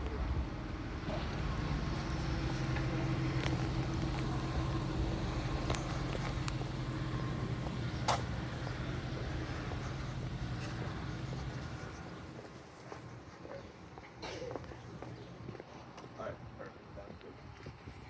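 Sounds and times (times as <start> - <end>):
motor vehicle hum: 0.0 - 12.5.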